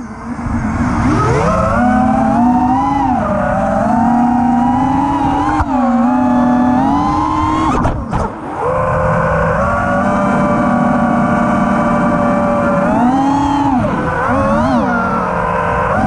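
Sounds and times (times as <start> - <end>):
drone motors whining: 0.0 - 16.0.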